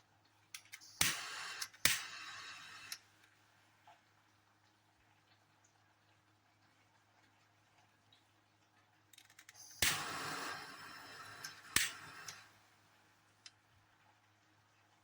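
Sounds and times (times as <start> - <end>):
hissing gas jet: 0.8 - 3.0, 9.7 - 12.5.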